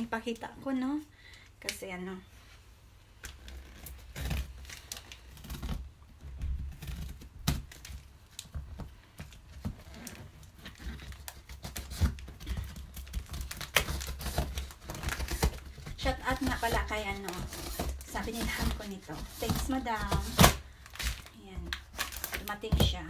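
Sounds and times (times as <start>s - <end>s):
plastic wrapping crinkling: 3.1s - 23.0s
packaging being torn open: 9.7s - 22.5s.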